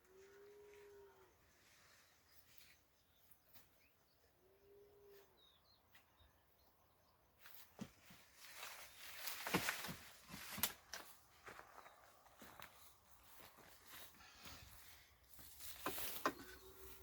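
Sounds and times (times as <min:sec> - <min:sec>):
faint bird chirps: 0:00.1 - 0:07.6.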